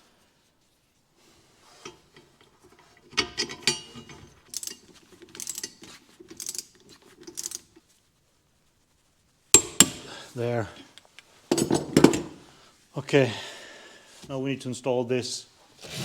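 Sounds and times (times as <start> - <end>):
metal part clinking and rattling: 1.8 - 7.8, 9.6 - 10.1, 11.5 - 12.4.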